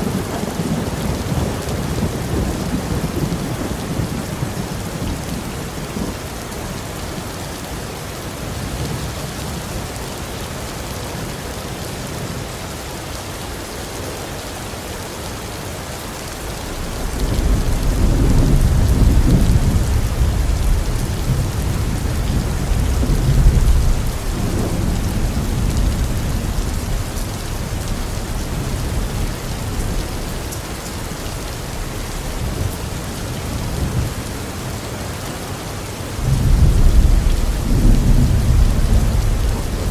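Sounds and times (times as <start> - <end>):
thunder rumbling: 0.0 - 6.3, 16.4 - 34.3, 36.2 - 39.9
heavy rain falling: 0.0 - 39.9.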